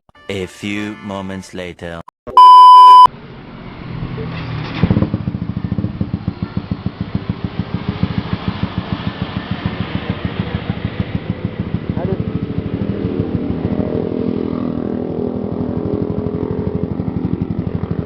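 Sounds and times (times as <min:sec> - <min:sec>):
loud steady beep: 0:02.3 - 0:03.1
motorcycle engine running: 0:04.6 - 0:18.0.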